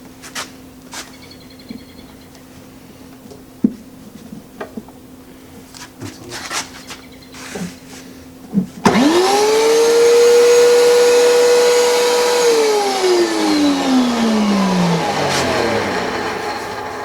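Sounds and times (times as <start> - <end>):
thickness planer high whine: 8.8 - 17.0.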